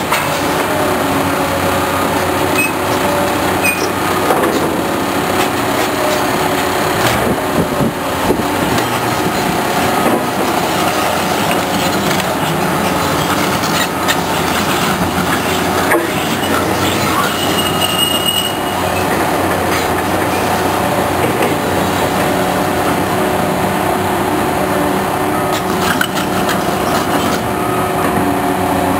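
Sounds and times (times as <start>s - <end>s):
diesel engines running: 0.0s - 28.9s
high squeal: 11.8s - 19.2s.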